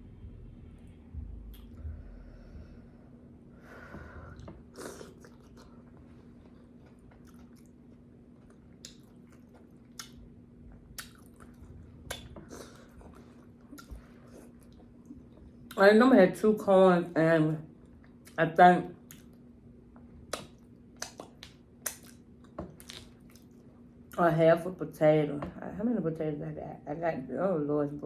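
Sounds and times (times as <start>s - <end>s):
person chewing food: 4.3s - 15.8s, 19.0s - 23.8s.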